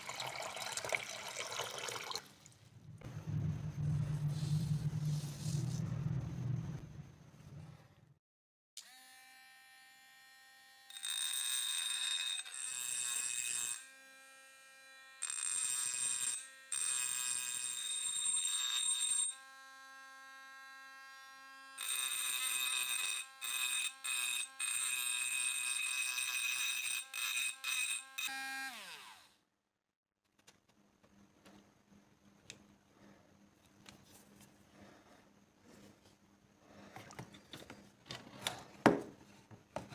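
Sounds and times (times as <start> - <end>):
power tool grinding metal: 8.8 - 19.4, 20.6 - 29.2.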